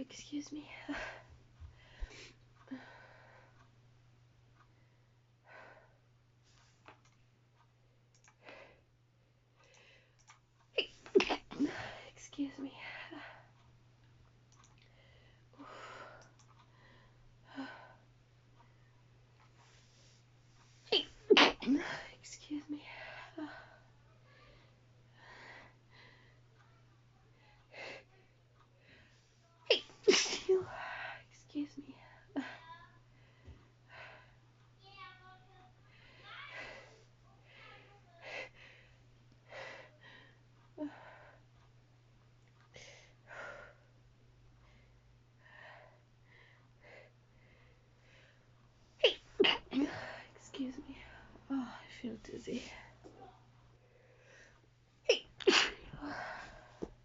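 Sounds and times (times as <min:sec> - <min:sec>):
steady low hum: 0:00.0 - 0:57.0
woman breathing softly: 0:00.5 - 0:03.7, 0:14.8 - 0:20.9, 0:21.9 - 0:26.6, 0:30.6 - 0:34.7, 0:42.6 - 0:49.0, 0:49.8 - 0:54.7, 0:55.9 - 0:57.0
faint clicks: 0:06.6 - 0:08.6, 0:13.6 - 0:15.0, 0:16.0 - 0:16.8
woman sneezing: 0:29.7 - 0:30.6, 0:55.1 - 0:55.8.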